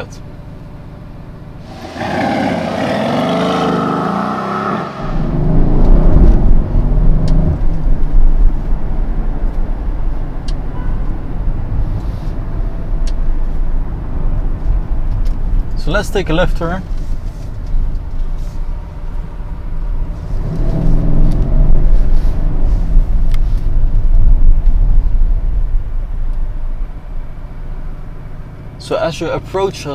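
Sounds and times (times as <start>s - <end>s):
car engine accelerating: 0.0s - 29.9s.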